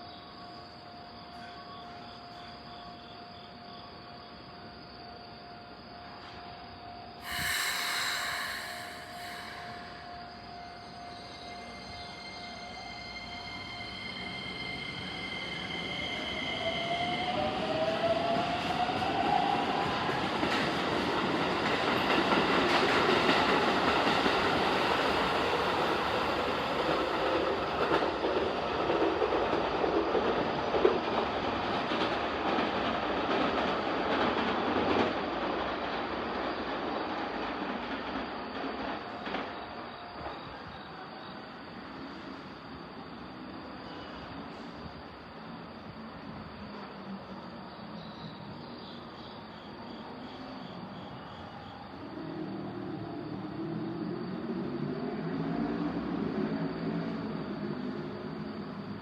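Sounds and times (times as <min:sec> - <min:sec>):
wheels rumbling on rail: 0:07.2 - 0:49.2.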